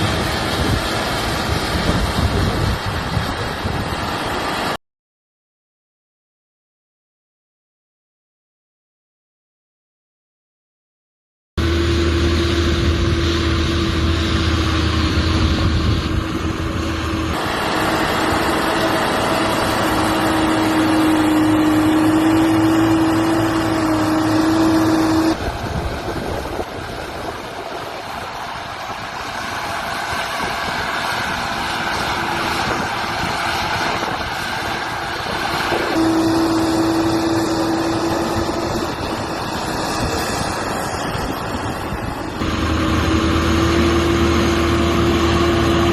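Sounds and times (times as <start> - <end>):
steady whine: 11.6 - 45.9
tractor engine under load: 11.6 - 45.9.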